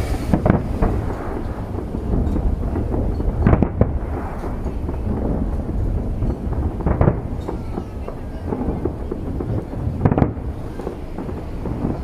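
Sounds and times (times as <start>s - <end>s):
firework shell bursts: 0.0s - 4.9s
continuous low rumble: 0.0s - 12.0s
firework crackles: 0.0s - 12.0s.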